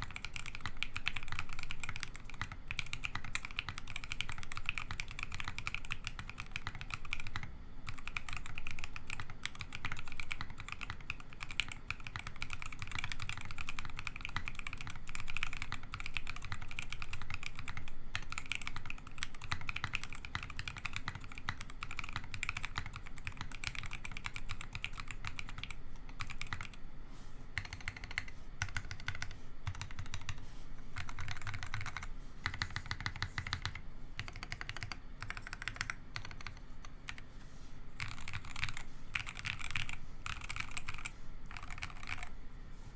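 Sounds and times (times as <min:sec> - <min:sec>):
typing on a mechanical keyboard: 0:00.0 - 0:26.8, 0:27.6 - 0:30.4, 0:31.0 - 0:37.3, 0:38.0 - 0:42.3.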